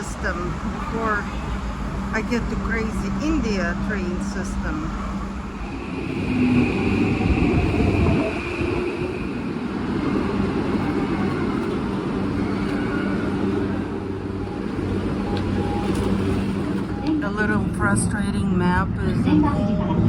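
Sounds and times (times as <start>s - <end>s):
high whine: 0.0s - 18.2s
train rumbling: 0.0s - 20.0s.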